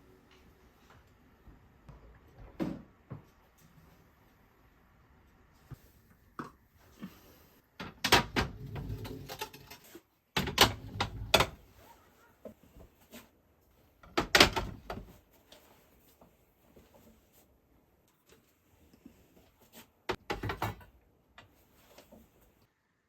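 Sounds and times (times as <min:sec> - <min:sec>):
soft rustle: 0:15.1 - 0:20.1.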